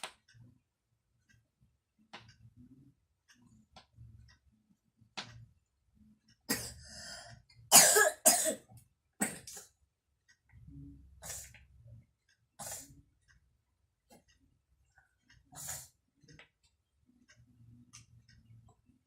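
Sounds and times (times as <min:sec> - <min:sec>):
young child coughing: 0:06.5 - 0:06.8, 0:07.7 - 0:09.6.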